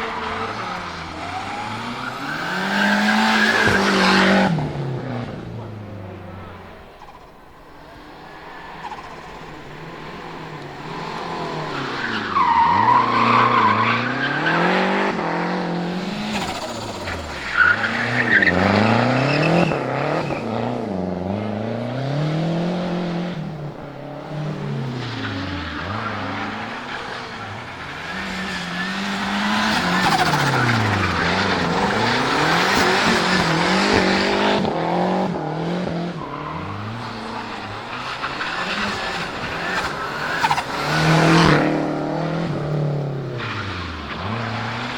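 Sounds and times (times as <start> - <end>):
car engine revving: 0.0 - 44.9.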